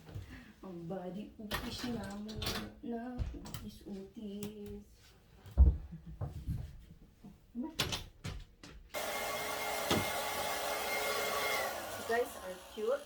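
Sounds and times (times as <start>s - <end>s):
electric dryer blowing: 9.0s - 13.0s.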